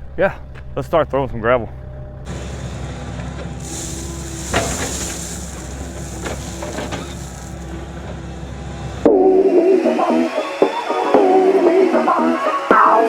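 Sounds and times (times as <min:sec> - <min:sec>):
bucket knocking and scraping gravel: 0:03.6 - 0:07.8.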